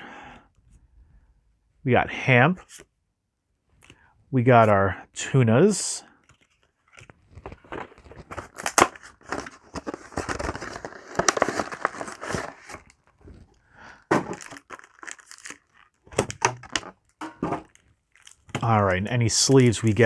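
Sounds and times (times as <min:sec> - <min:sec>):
cards rustling: 0:06.2 - 0:20.0
plastic wrapper tearing and crinkling: 0:06.4 - 0:20.0.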